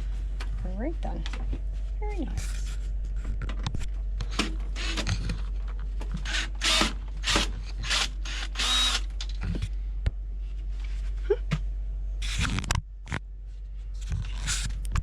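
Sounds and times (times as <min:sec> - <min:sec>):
cordless drill bursts: 0:04.4 - 0:05.1, 0:06.2 - 0:09.1.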